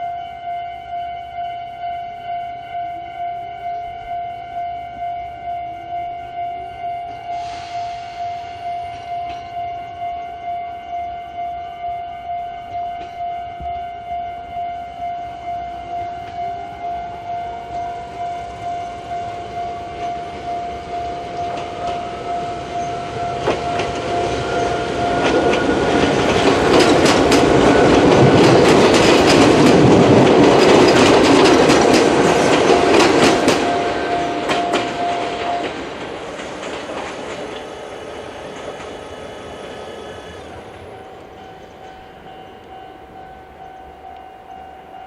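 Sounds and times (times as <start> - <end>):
level-crossing alarm pulsing tone: 0.0 - 45.0
train wheels clacking on rail joints: 17.7 - 44.2.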